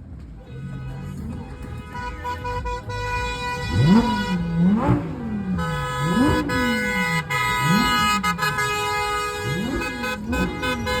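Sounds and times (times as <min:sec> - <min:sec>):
car horns blaring: 0:00.0 - 0:11.0
car engine revving: 0:00.6 - 0:11.0.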